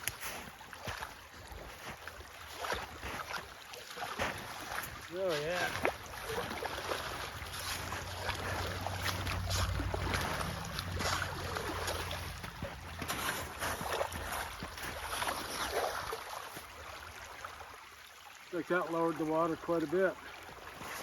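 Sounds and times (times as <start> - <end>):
slush splashing in a ditch: 0.0 - 21.0
steady low rumble: 7.5 - 13.0.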